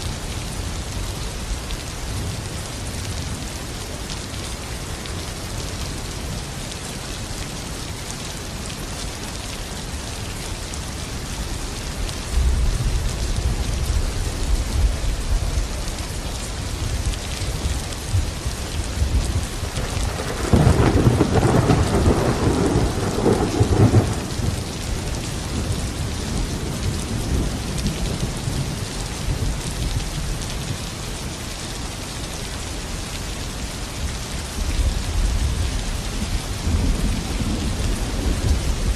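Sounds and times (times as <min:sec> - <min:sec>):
heavy rain: 0:00.0 - 0:38.9
low thunder rumble: 0:16.8 - 0:30.0, 0:34.8 - 0:38.9
crackling thunderclap: 0:17.6 - 0:29.5, 0:36.6 - 0:38.9.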